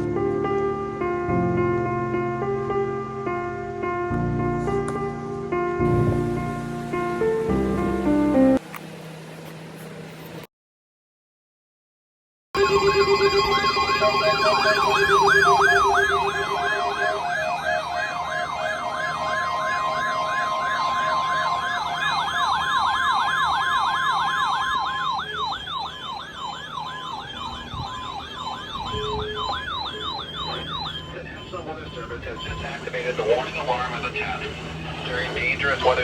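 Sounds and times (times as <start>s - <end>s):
electronic siren yelping: 12.6s - 34.5s
steady warning alarm tone: 12.6s - 36.0s.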